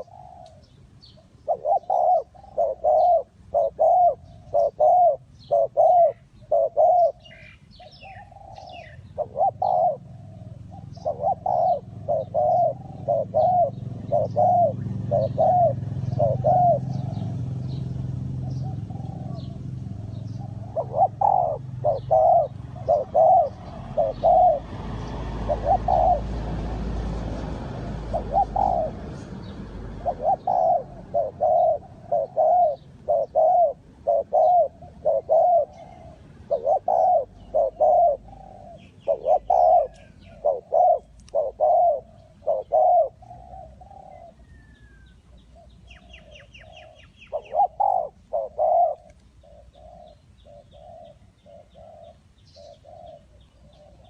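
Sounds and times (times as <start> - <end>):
dove cooing: 0.0 - 54.0.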